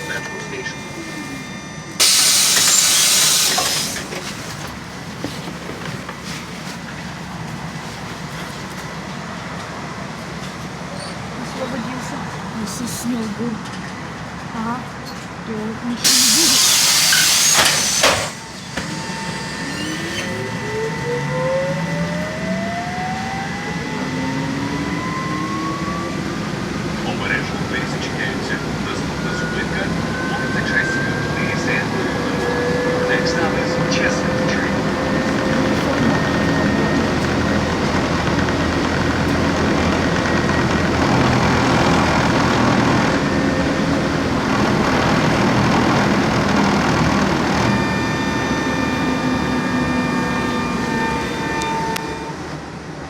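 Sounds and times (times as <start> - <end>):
high hum: 0.0 - 10.1, 16.0 - 53.0
trolleybus motor whining: 0.0 - 53.0
air hiss: 2.0 - 4.1, 16.1 - 18.5.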